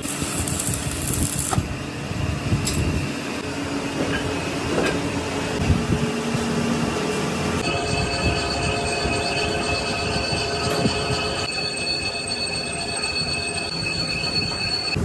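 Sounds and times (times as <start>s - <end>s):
workshop machinery running: 0.0s - 15.0s.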